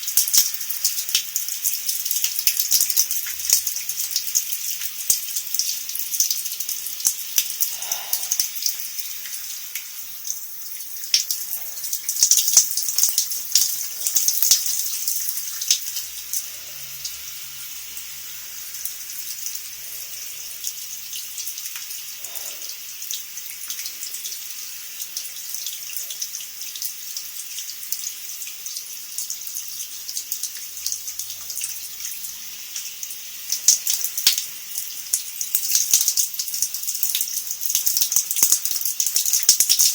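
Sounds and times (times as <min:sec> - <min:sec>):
shower water spraying: 0:00.0 - 0:29.1.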